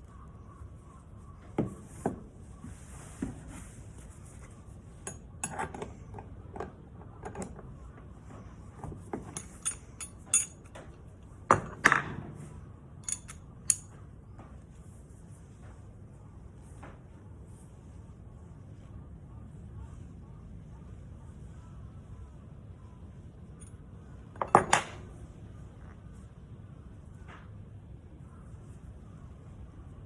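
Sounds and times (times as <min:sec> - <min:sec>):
small hard parts clinking: 0:09.2 - 0:10.9, 0:13.0 - 0:13.9.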